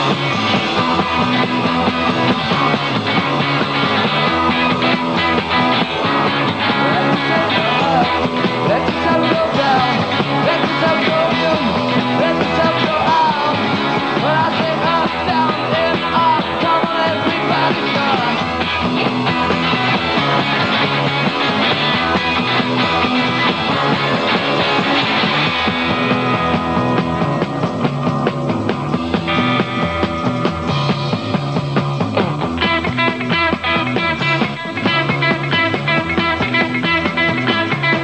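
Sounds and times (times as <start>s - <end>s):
bass guitar: 0.0s - 38.0s
bending guitar lead line: 0.0s - 38.0s
drums: 0.0s - 38.0s
electric guitars: 0.0s - 38.0s.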